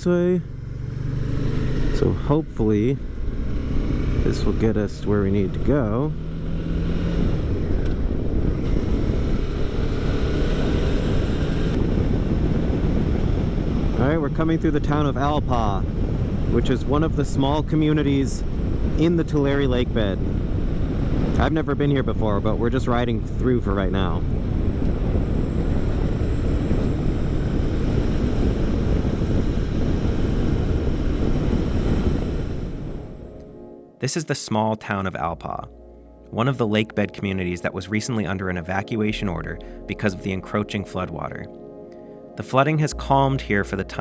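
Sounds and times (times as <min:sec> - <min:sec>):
motorcycle running: 0:00.0 - 0:33.4
wind and road noise: 0:00.0 - 0:33.8
motorcycle engine running: 0:00.4 - 0:02.4, 0:24.1 - 0:33.2.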